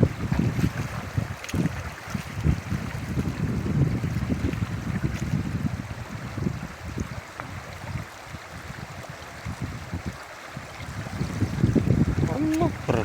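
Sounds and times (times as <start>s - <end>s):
wind rumble on microphone: 0.0s - 13.0s
river water rushing: 10.0s - 13.0s.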